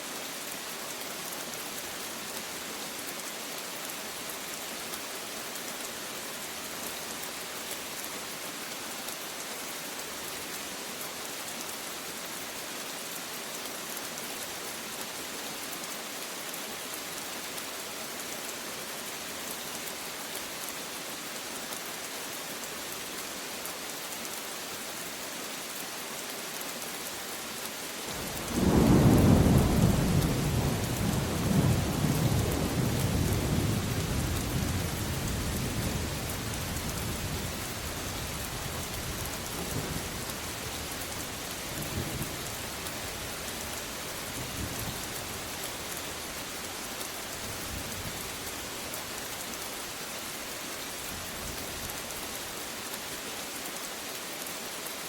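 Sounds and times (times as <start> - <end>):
steady rain hiss: 0.0 - 55.0
low rumble of thunder: 28.2 - 37.6.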